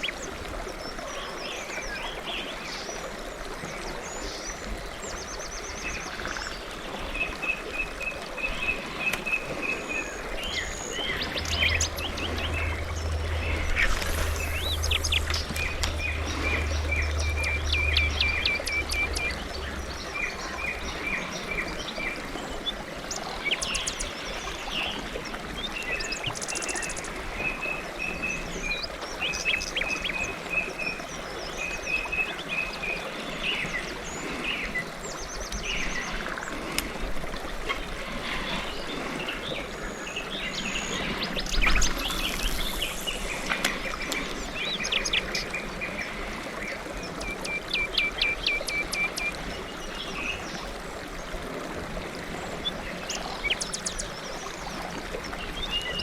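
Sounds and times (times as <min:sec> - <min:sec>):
steady outdoor hiss: 0:08.3 - 0:30.4, 0:31.4 - 0:56.0
songbirds chirping and singing: 0:08.6 - 0:24.2
low hum: 0:10.4 - 0:20.6.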